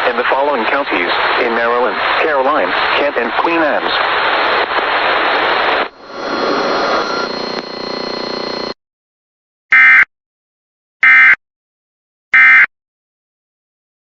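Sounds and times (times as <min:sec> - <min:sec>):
radio static hiss: 0:00.0 - 0:08.8
digital data tone bursts: 0:05.9 - 0:08.8.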